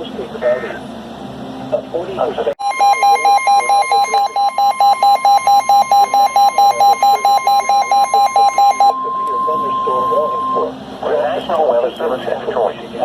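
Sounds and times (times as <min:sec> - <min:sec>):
radio alarm beeping rapidly: 0:02.6 - 0:10.8.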